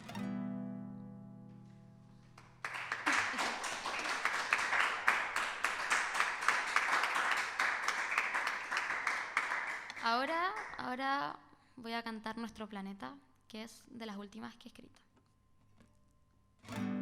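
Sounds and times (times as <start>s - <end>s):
guitar chord ringing: 0.0s - 2.1s, 16.7s - 17.0s
audience applauding: 2.4s - 10.8s.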